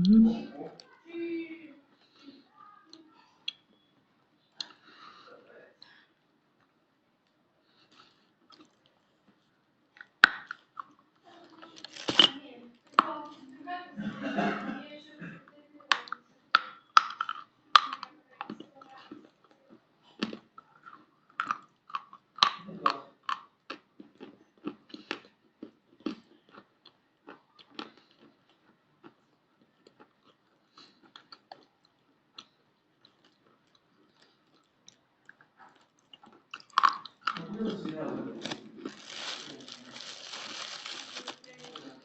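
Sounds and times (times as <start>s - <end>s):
chalk crunching while chewed: 10.0s - 12.3s, 15.9s - 37.8s, 38.4s - 42.0s.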